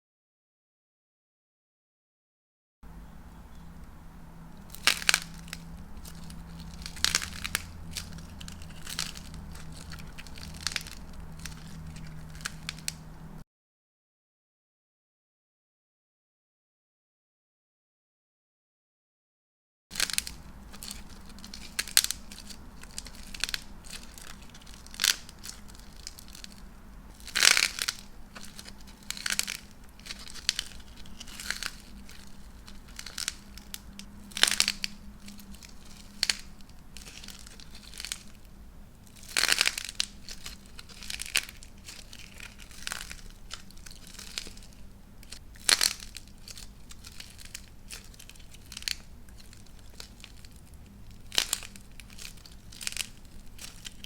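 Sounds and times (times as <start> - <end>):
dried clay cracking and crumbling: 3.2 - 13.4, 19.9 - 54.0.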